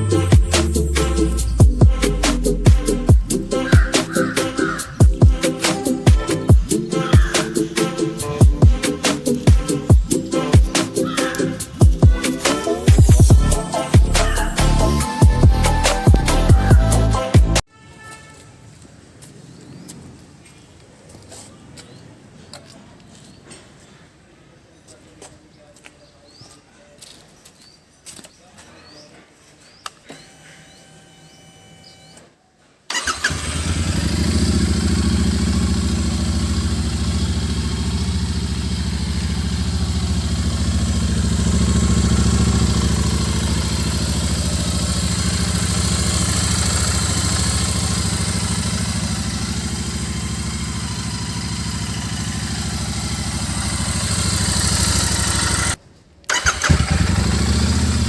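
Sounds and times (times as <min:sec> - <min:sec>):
motorcycle engine starting and idling: 0:00.0 - 0:17.6, 0:32.9 - 0:58.0.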